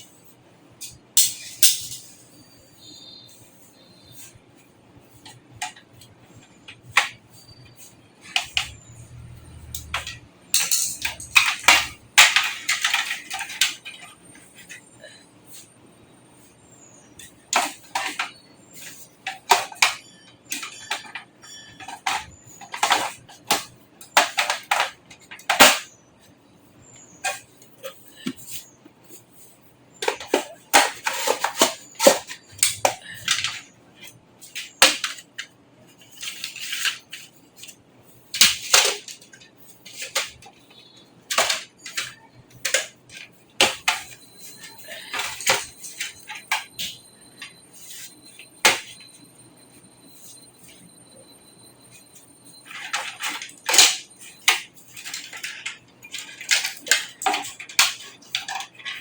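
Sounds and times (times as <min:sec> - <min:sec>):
metal and plastic parts clicking: 0:07.8 - 0:14.9, 0:17.2 - 0:25.9, 0:52.6 - 0:59.0.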